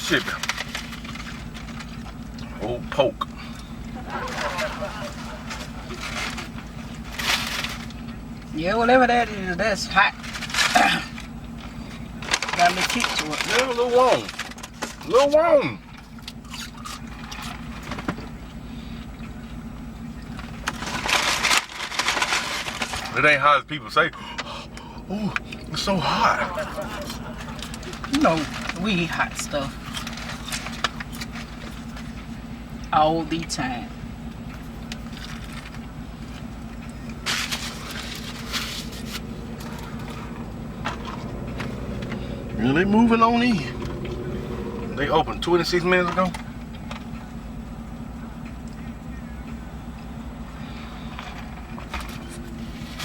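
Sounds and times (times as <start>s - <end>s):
car engine idling: 0.0s - 53.0s
steady low hum: 0.0s - 53.0s
paper wrapper rustling and crinkling: 12.2s - 15.0s, 20.7s - 23.2s, 27.0s - 32.2s, 37.2s - 41.6s.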